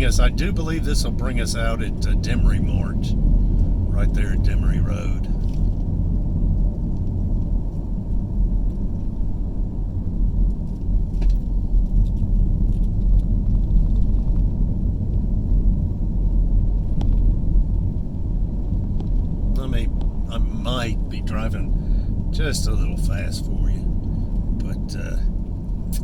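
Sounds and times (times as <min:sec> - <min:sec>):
car driving on road: 0:00.0 - 0:26.0.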